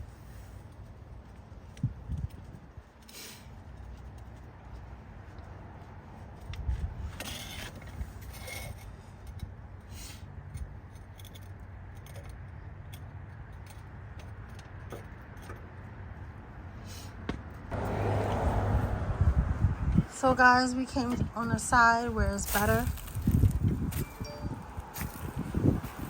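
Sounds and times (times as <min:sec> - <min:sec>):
metallic jingling and scraping: 0:06.1 - 0:16.3, 0:20.1 - 0:26.0
low rumble: 0:17.7 - 0:20.2.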